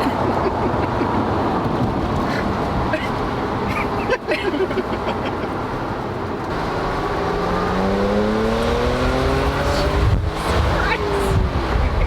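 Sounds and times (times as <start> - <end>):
car engine accelerating: 5.6 - 12.0.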